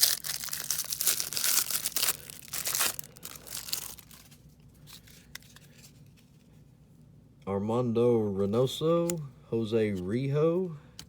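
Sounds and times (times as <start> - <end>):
card pack packaging tearing: 0.0 - 4.4
light handling of packaging: 0.0 - 6.7.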